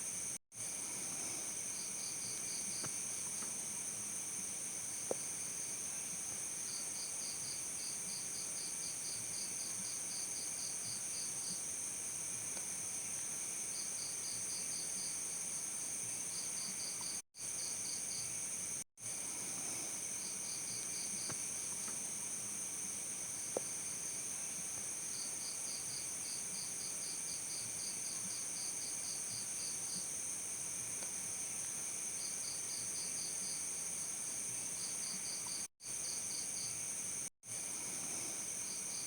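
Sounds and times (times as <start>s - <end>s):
crickets chirping: 0.0s - 39.0s.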